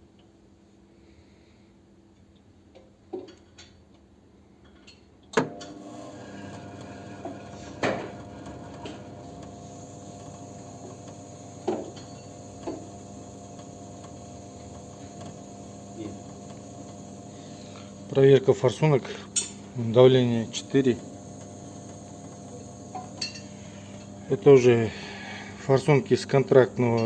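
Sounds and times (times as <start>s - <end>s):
test stand machine humming: 5.6s - 27.0s.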